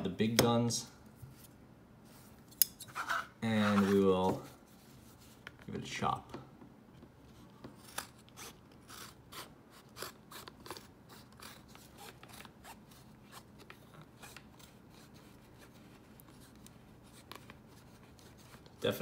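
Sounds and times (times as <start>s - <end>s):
scissors snipping leather: 7.8s - 13.4s.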